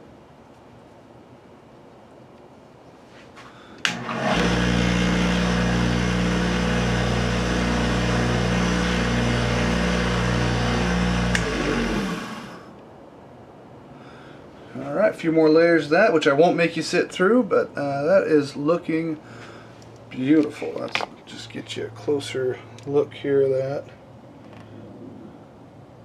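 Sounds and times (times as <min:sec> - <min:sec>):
lathe switch click: 0:03.8 - 0:04.8, 0:11.2 - 0:11.6
lathe motor humming: 0:03.8 - 0:12.7
cloth buffing spinning wood: 0:03.9 - 0:12.7.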